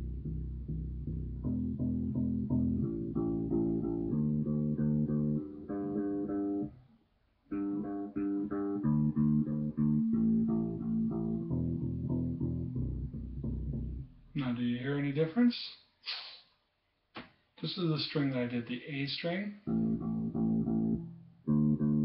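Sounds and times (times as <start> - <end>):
plucked electric bass notes: 0.0 - 6.8, 7.5 - 14.4, 19.6 - 22.0.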